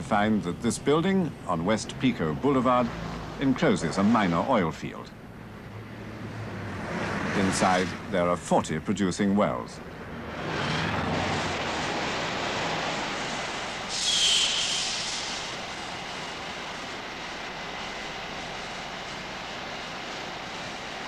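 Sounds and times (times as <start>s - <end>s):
oil well machinery rushing: 7.0s - 21.0s
hiss with high whistle: 11.3s - 18.2s.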